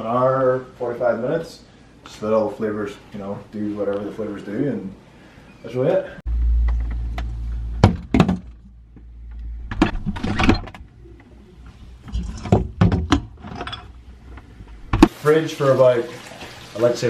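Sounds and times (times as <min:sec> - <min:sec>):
low rumble: 0:06.3 - 0:12.8
fridge door and containers knocking: 0:07.8 - 0:08.6.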